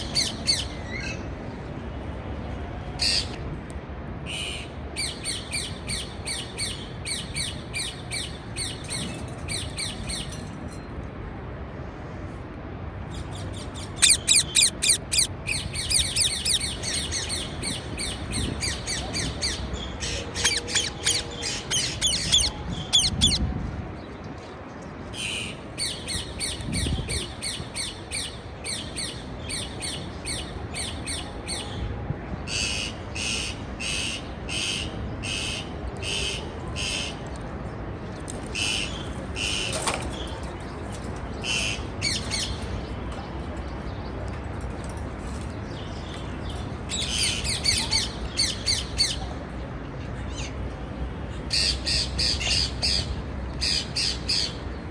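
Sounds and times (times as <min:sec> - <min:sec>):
parakeets squawking and chirping: 0:14.0 - 0:16.7, 0:20.3 - 0:23.4.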